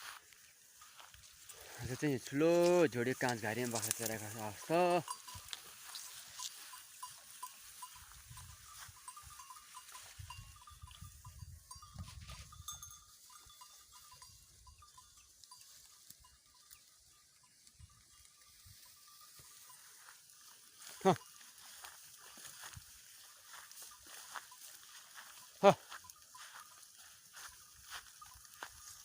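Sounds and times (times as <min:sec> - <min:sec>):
soft low rustle: 0:18.0 - 0:29.0.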